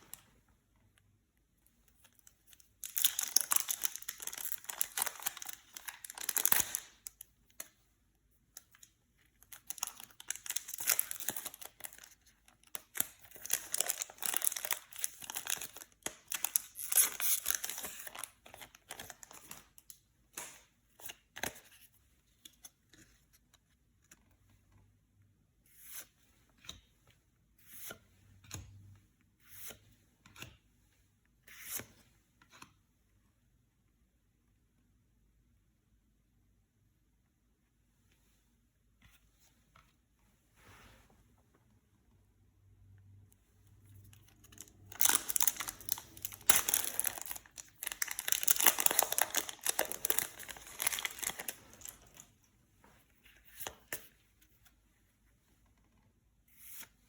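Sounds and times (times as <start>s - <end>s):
foil wrappers tearing and crinkling: 44.6s - 52.2s.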